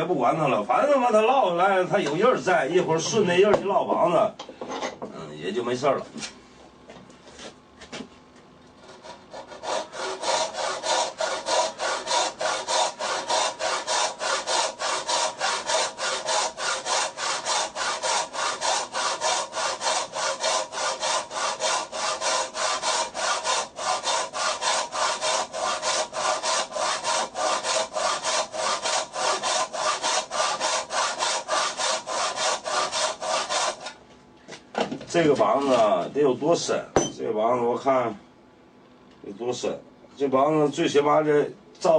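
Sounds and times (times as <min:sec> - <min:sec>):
hand saw cutting wood: 0:08.8 - 0:34.0.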